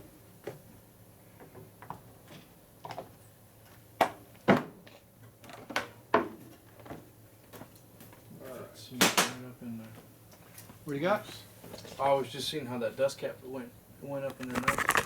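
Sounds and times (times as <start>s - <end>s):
metal parts knocking and clunking: 14.4s - 15.0s.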